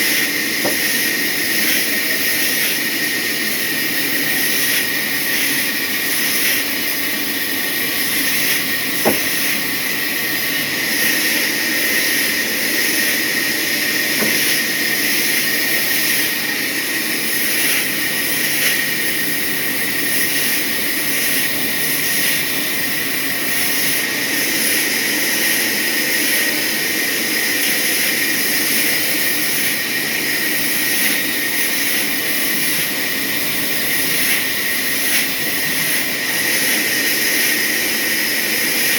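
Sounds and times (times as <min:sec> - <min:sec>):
sawmill saw cutting log: 0:00.0 - 0:38.9.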